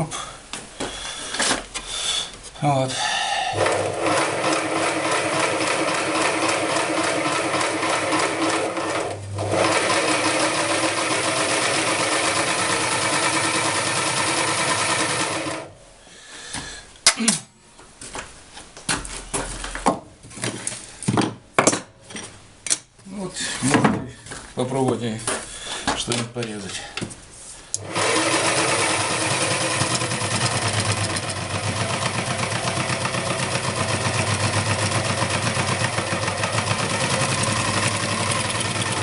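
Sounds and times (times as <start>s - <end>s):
scroll saw running: 3.5s - 15.7s, 27.8s - 39.0s.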